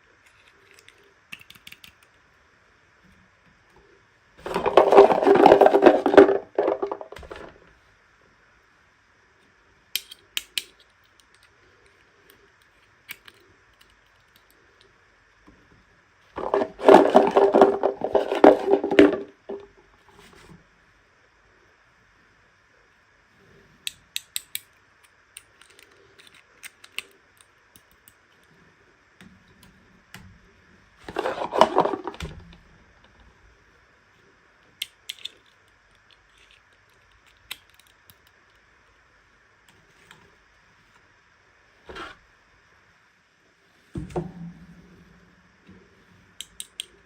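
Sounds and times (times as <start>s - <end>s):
plastic toys clicking: 0.3s - 2.2s, 25.4s - 28.2s, 34.8s - 38.4s
plastic rustling: 4.4s - 7.6s, 16.4s - 19.7s, 31.0s - 32.2s.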